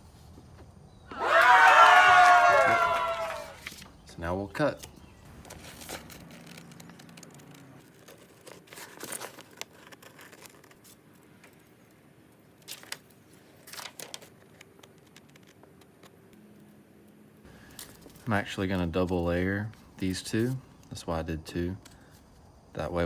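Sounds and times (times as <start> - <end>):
paper crinkling: 3.5 - 4.0, 5.4 - 11.6, 12.6 - 16.2
scissors snipping paper: 5.6 - 11.0.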